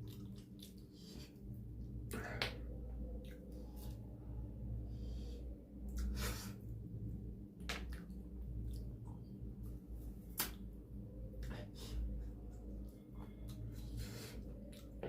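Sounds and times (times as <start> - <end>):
chewing with mouth clicks: 0.0 - 1.1, 14.6 - 15.0
steady low hum: 0.0 - 15.0.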